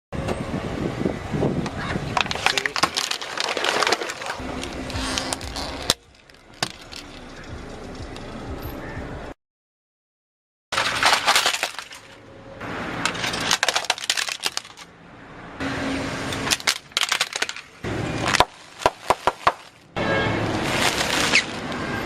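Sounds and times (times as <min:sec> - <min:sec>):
brittle crunching and cracking: 0:02.2 - 0:07.0, 0:10.8 - 0:12.2, 0:13.3 - 0:14.9, 0:16.5 - 0:19.8.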